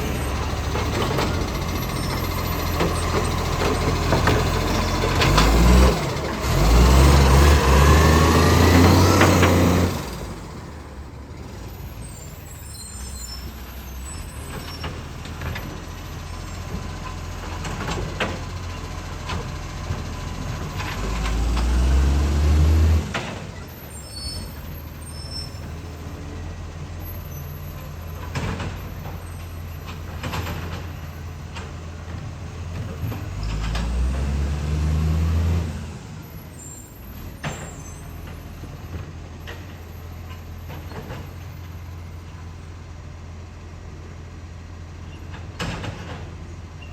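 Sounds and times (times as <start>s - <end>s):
truck engine revving: 0.0s - 37.3s.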